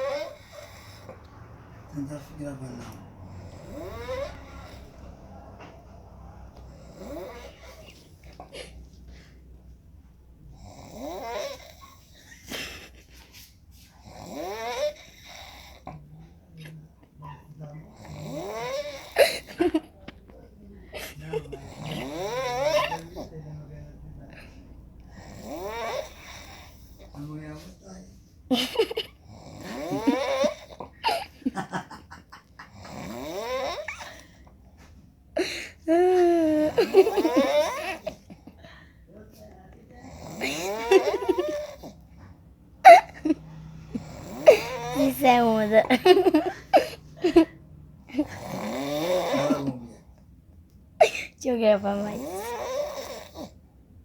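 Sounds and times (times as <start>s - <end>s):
snoring with squeaky whistle: 0.0s - 2.4s, 3.3s - 5.1s, 6.7s - 7.8s, 10.6s - 12.1s, 14.0s - 15.9s, 17.2s - 19.2s, 21.6s - 23.3s, 25.1s - 27.3s, 29.3s - 30.8s, 32.7s - 34.2s, 36.8s - 38.1s, 44.0s - 45.8s, 48.2s - 49.9s, 52.1s - 53.6s.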